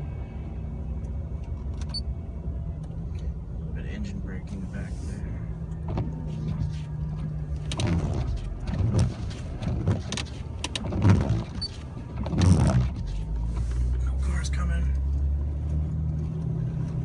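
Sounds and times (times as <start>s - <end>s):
engine hum in cabin: 0.0s - 17.0s
vehicle knocks and rattles: 7.6s - 13.4s.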